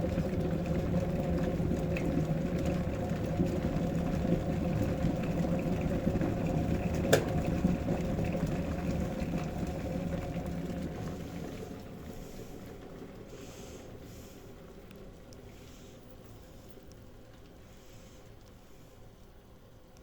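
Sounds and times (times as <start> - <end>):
kettle water boiling: 0.0 - 20.0
kettle switch click: 7.1 - 7.3.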